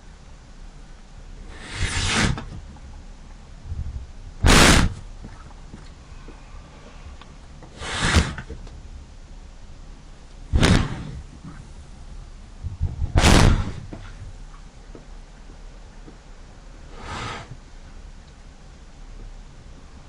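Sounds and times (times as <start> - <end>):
pet sneezing: 1.5 - 2.6, 4.4 - 5.0, 7.7 - 8.5, 10.5 - 11.2, 13.2 - 14.2.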